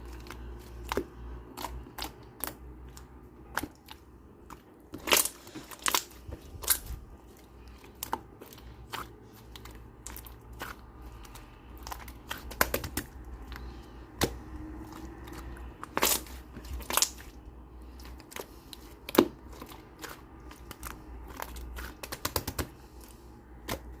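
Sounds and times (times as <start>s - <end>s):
slime clicking and popping: 11.8s - 14.4s, 15.3s - 17.3s, 19.0s - 22.7s.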